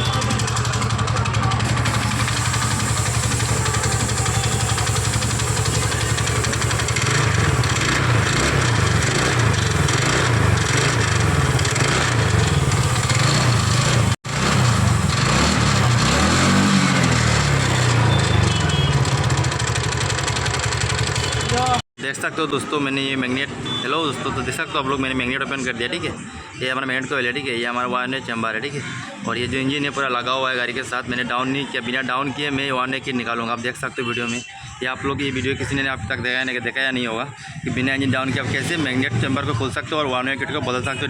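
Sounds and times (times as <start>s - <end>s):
scooter engine running: 0.0s - 21.8s.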